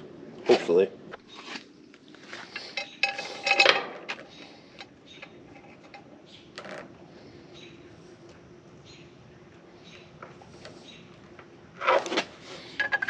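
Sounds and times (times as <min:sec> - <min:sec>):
tools and metal parts clinking: 0:02.5 - 0:06.9, 0:11.8 - 0:13.0.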